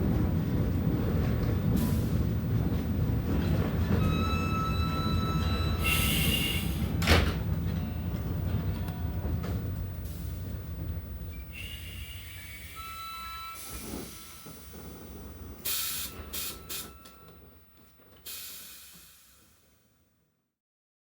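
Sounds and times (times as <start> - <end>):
train hissing: 1.7 - 2.5, 3.8 - 7.2, 10.0 - 17.0, 18.2 - 20.0
music: 7.6 - 11.6.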